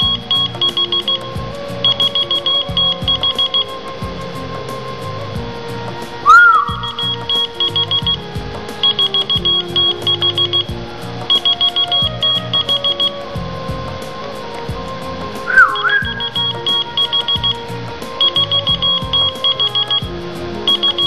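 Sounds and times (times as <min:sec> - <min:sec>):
key finder high beeps: 0:00.0 - 0:03.7, 0:06.3 - 0:08.2, 0:08.8 - 0:10.7, 0:11.3 - 0:13.2, 0:15.5 - 0:17.6, 0:18.2 - 0:20.1, 0:20.7 - 0:21.0
person whistling: 0:00.0 - 0:03.8, 0:06.2 - 0:08.2, 0:15.4 - 0:17.6, 0:20.7 - 0:21.0
background music: 0:00.0 - 0:21.0.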